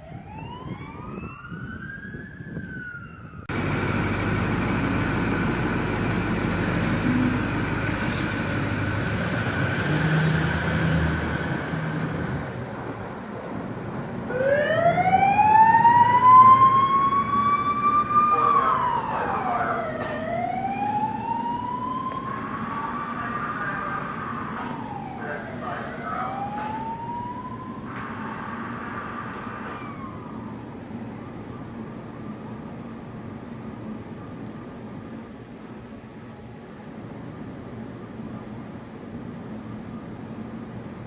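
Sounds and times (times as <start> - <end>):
fire engine siren wailing: 0.0 - 12.7, 14.2 - 33.1
vehicle engine noise: 0.0 - 41.0.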